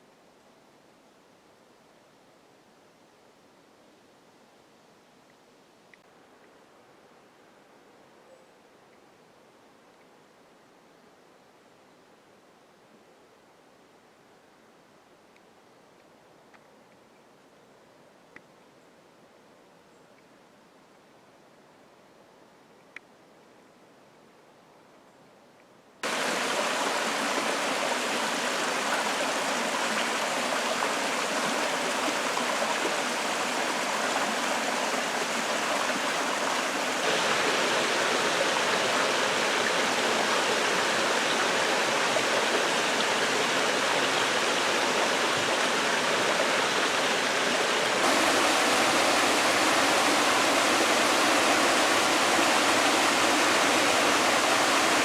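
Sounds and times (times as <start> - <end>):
waterfall roaring: 26.0 - 55.0.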